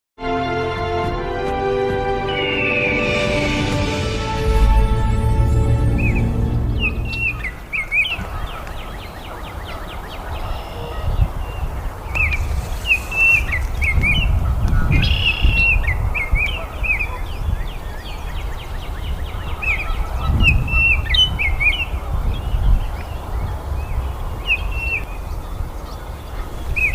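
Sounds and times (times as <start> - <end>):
intro music: 0.2 - 8.0
bird singing whistled notes: 2.2 - 3.6, 5.8 - 26.1.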